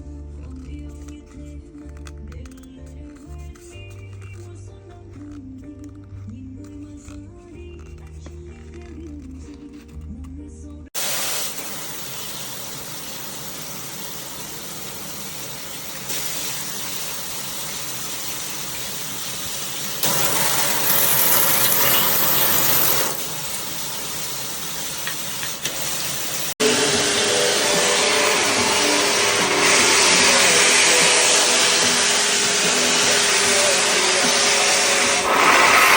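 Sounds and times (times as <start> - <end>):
water spraying from shower head: 11.0 - 35.9.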